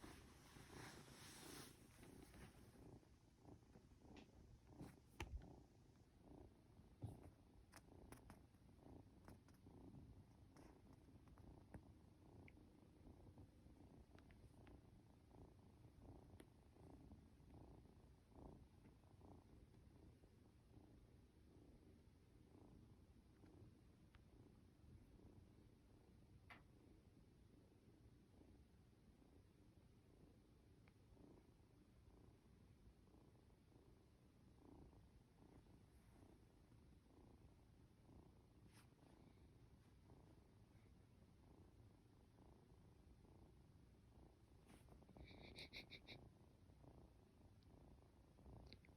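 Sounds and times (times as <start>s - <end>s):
kitten purring faintly: 0.0s - 48.9s
faint click: 5.2s - 5.5s.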